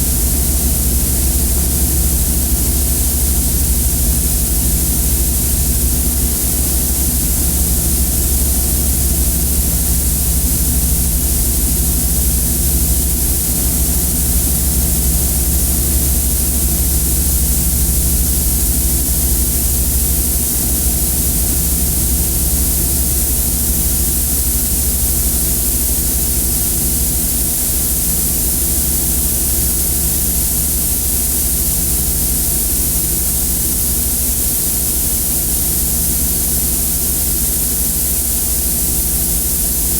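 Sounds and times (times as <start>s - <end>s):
low droning hum: 0.0s - 23.8s.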